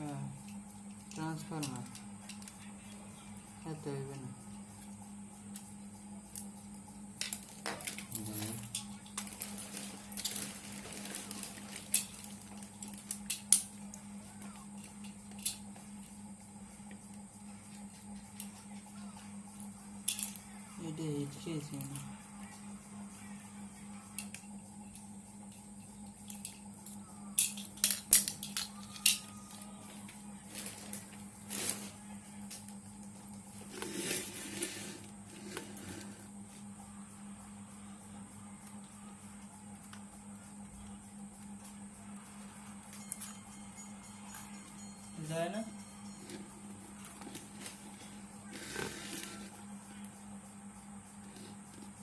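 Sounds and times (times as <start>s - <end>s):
small parts clicking and tapping: 0.0s - 3.8s, 4.8s - 16.2s, 16.8s - 20.6s, 21.6s - 22.5s, 24.0s - 36.2s, 38.6s - 50.3s
steady low hum: 0.0s - 52.0s
soft scrape: 33.7s - 36.3s.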